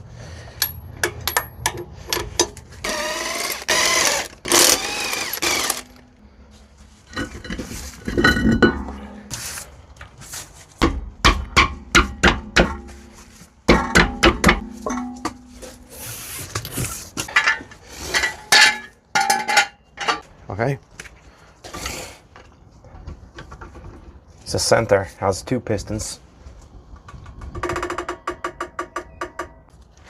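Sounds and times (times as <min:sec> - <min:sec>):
sharp metal knocks: 0:00.6 - 0:02.6, 0:10.8 - 0:13.0, 0:13.7 - 0:15.5
hand tools clanking on metal: 0:17.2 - 0:20.2.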